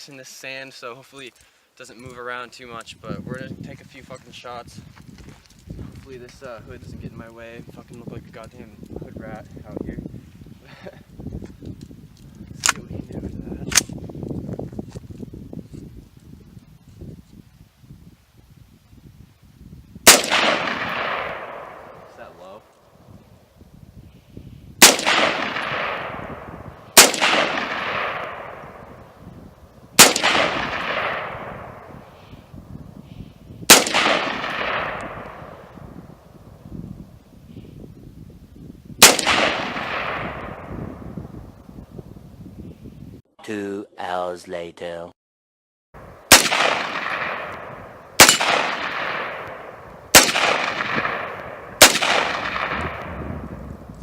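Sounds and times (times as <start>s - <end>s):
rifle shots with echo: 20.0s - 22.7s, 24.8s - 29.2s, 30.0s - 32.3s, 33.7s - 36.2s, 39.0s - 41.2s, 46.3s - 53.8s.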